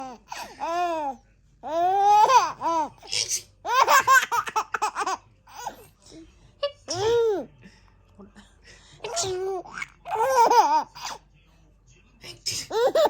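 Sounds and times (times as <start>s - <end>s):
baby laughing: 0.0s - 5.8s, 9.0s - 11.2s, 12.6s - 13.0s.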